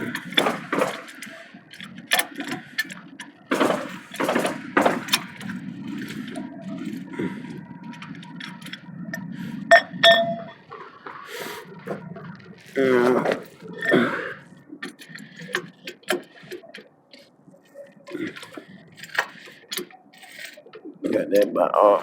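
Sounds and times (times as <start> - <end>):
metal tools knocking and clinking: 9.7 - 10.6.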